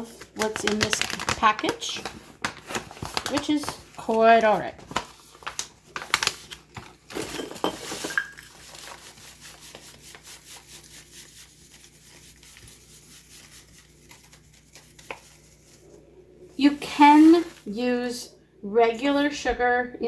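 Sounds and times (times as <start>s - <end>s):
packet rustling: 0.0s - 16.0s
spoon scraping and clinking: 7.2s - 8.6s.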